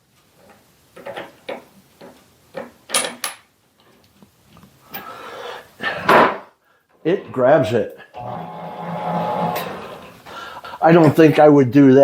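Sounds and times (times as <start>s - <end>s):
metal scrape: 8.2s - 10.5s.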